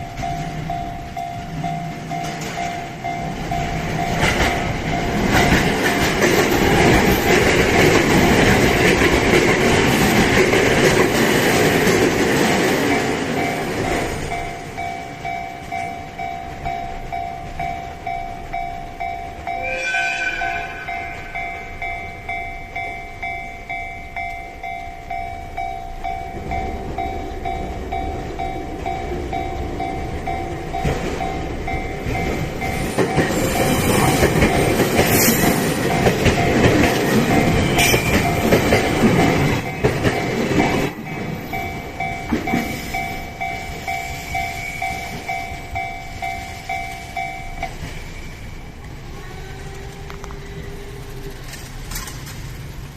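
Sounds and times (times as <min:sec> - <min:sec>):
level-crossing warning bell: 0:00.0 - 0:52.9
train passing with wheel clatter: 0:00.0 - 0:52.9
train horn: 0:19.5 - 0:21.8, 0:49.1 - 0:51.4.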